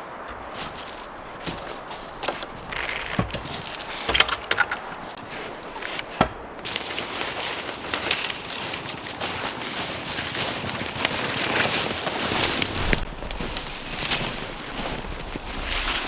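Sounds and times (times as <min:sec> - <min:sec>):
wood knocking and snapping: 0:01.4 - 0:06.8
steady hiss: 0:11.8 - 0:16.0.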